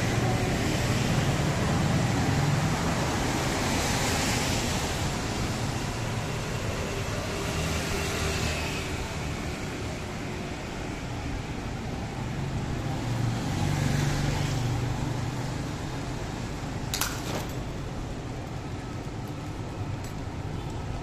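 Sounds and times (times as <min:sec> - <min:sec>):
road noise: 0:00.0 - 0:21.0.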